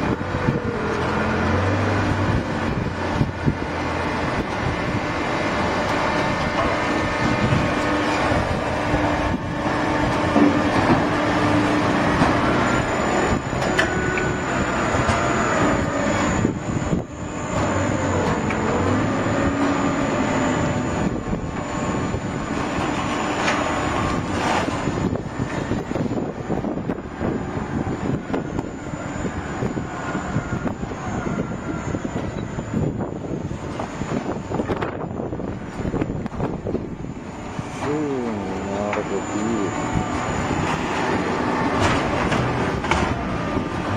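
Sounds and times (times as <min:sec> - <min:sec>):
loud machine din: 0:00.0 - 0:43.9
thin high whine: 0:11.5 - 0:42.9.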